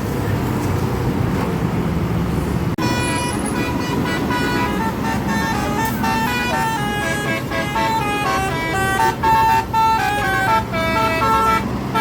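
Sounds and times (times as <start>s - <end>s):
low rumble of traffic: 0.0s - 12.0s
bus horn playing a tune: 2.8s - 12.0s.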